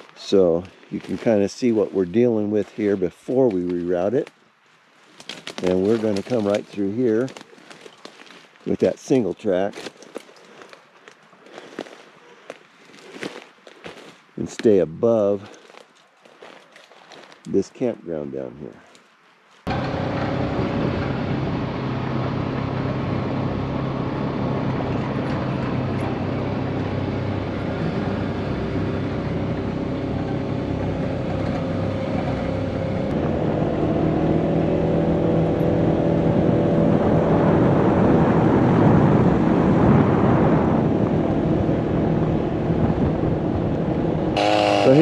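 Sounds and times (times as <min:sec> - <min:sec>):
vehicle engine running: 0:19.7 - 0:38.7, 0:40.9 - 0:45.0.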